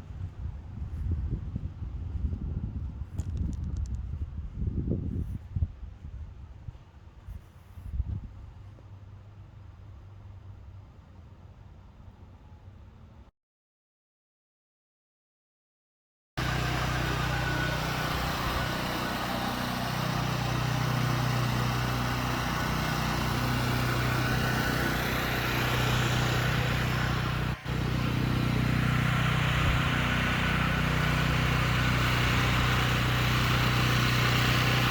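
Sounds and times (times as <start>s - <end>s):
engine running: 16.4s - 34.9s.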